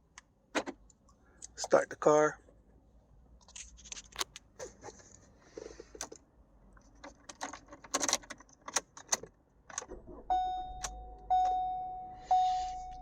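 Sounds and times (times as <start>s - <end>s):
car warning chime: 10.2s - 13.0s.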